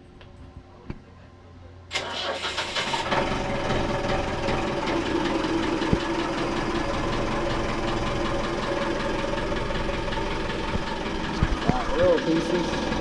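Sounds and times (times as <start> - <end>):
boat engine idling: 3.0 - 13.0
sharp engine knock: 4.4 - 13.0.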